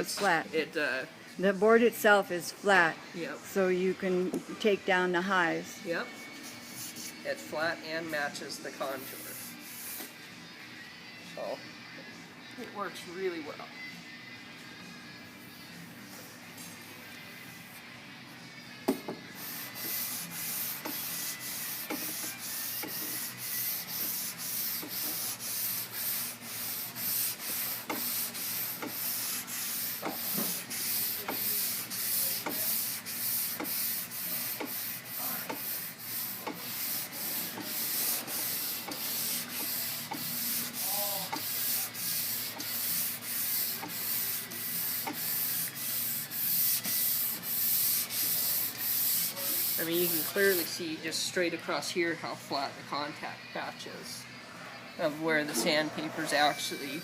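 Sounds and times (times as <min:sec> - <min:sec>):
sandpaper rasping on car panel: 0:19.4 - 0:50.8.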